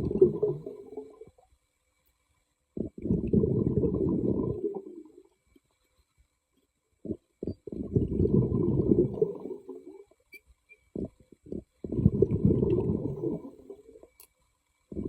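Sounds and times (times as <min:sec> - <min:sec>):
underwater bubbling of exhaled air: 0:00.0 - 0:01.4, 0:02.8 - 0:05.4, 0:07.0 - 0:10.2, 0:10.9 - 0:14.2.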